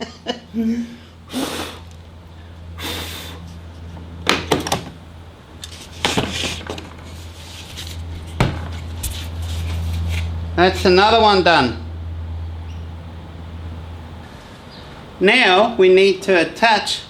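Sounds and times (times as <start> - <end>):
steady low hum: 0.0 - 17.0
wooden board knocks and clunks: 4.2 - 5.0, 8.4 - 8.8.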